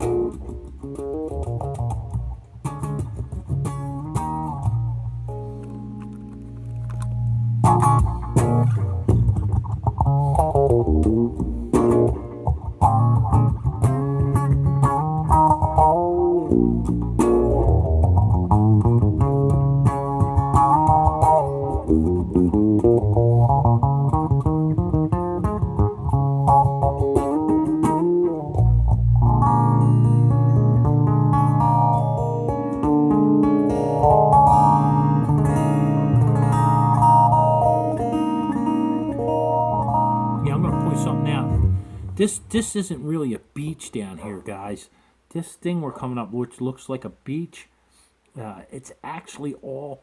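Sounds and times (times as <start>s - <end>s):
bass guitar line: 0.0s - 43.2s
plucked guitar: 0.0s - 43.4s.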